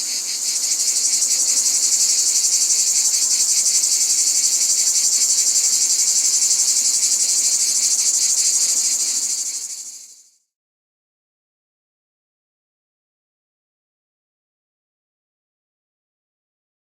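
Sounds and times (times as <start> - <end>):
cicadas buzzing: 0.0 - 10.4.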